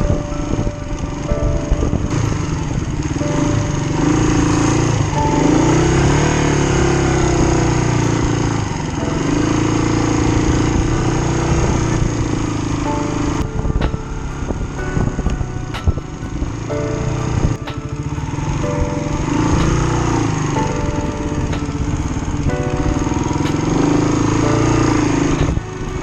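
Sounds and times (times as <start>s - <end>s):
dirt bike engine revving: 2.1s - 13.1s, 16.5s - 26.0s.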